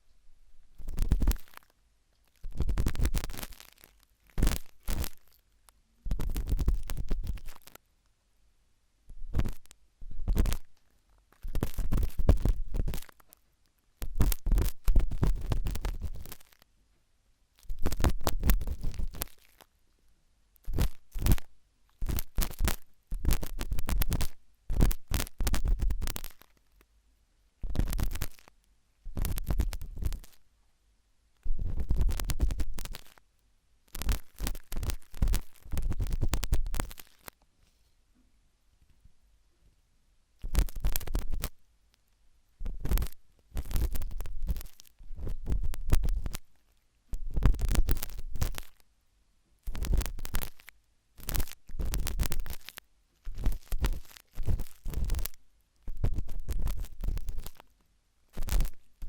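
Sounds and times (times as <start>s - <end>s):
toothpick scratching in ear: 0.8s - 1.7s, 2.3s - 5.4s, 6.0s - 7.8s, 9.3s - 10.8s, 11.4s - 13.4s, 14.0s - 16.6s, 17.6s - 19.7s, 20.6s - 26.5s, 27.6s - 28.5s, 29.1s - 30.4s, 31.6s - 33.2s, 33.9s - 37.4s, 40.4s - 41.6s, 42.6s - 46.5s, 47.1s - 48.8s, 49.6s - 57.6s, 58.3s - 59.0s.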